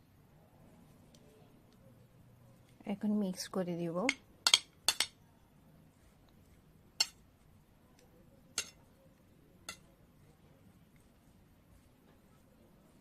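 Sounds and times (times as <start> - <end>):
utensil clinking against bowl: 8.6 - 8.9, 9.6 - 9.9.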